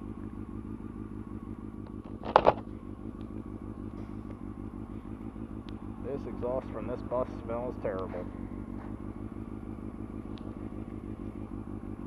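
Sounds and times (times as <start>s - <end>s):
motorcycle engine idling: 0.0s - 12.0s.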